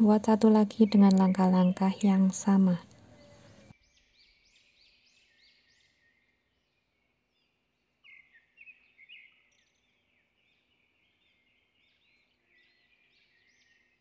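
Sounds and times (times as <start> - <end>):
faint birds chirping: 0.0 - 14.0.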